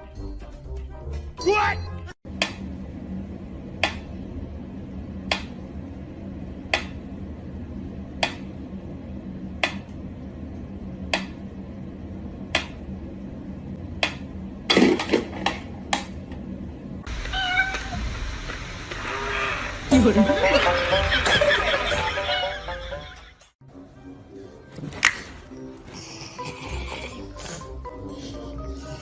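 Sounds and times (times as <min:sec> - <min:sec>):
low steady hum: 0:02.3 - 0:23.3.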